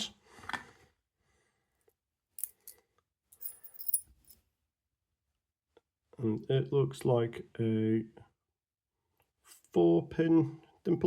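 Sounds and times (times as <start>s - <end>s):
keys clinking: 3.4s - 4.4s.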